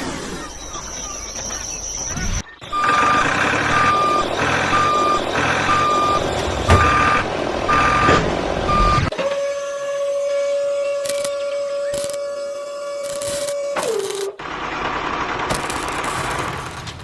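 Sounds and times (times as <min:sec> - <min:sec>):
vehicle reversing alarm beeping: 0:02.6 - 0:09.2.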